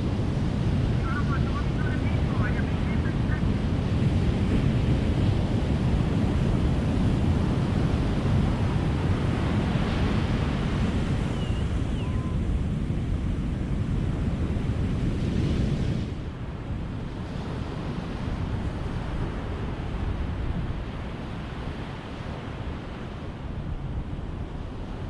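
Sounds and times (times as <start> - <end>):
waves washing on a beach: 0.0 - 25.0.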